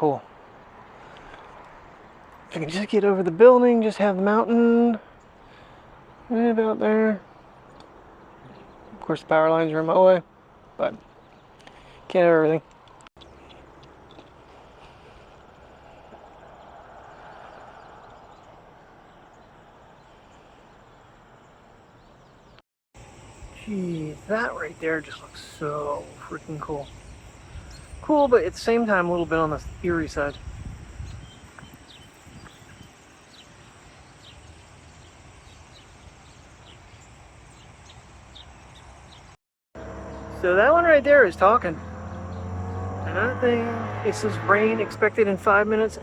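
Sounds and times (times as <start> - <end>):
birds chirping: 0.0 - 46.0
steady wash of outdoor noise: 0.0 - 46.0
faint insect trill: 23.0 - 39.3.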